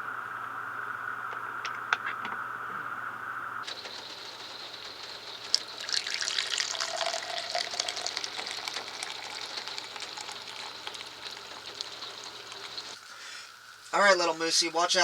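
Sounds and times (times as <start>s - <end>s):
water drips and patters: 5.5s - 13.0s
water falling and splashing: 5.6s - 13.0s.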